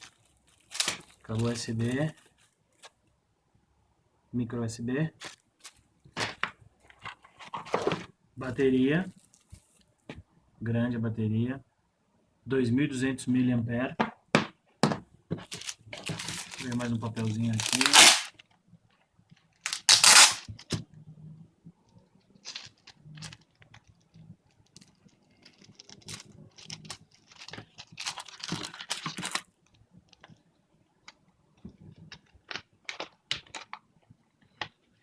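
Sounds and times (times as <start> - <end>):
paper leaflet rustling and crinkling: 0.0 - 3.0, 5.2 - 8.1, 15.4 - 18.4, 19.7 - 20.8, 22.4 - 24.0, 24.7 - 29.5.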